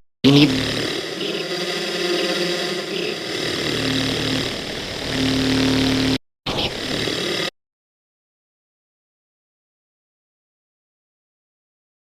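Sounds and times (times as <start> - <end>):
distorted electronic drone: 0.2 - 7.5.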